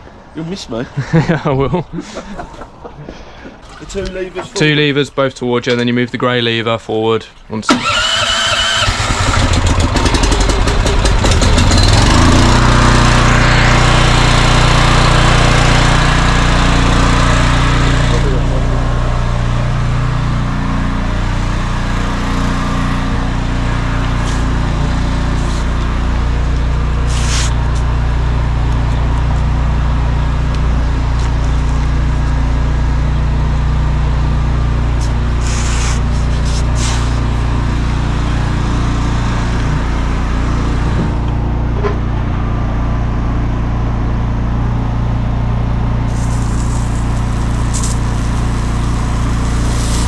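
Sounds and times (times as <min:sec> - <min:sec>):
small petrol engine running: 0:07.7 - 0:50.0
brief high hisses: 0:24.2 - 0:24.5, 0:25.4 - 0:25.8, 0:27.1 - 0:27.6, 0:35.4 - 0:37.5.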